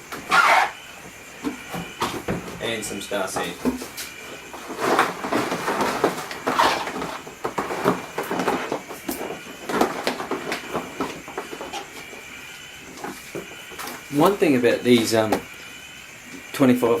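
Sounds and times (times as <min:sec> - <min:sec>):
plastic equipment knocking and clattering: 0:04.6 - 0:12.2.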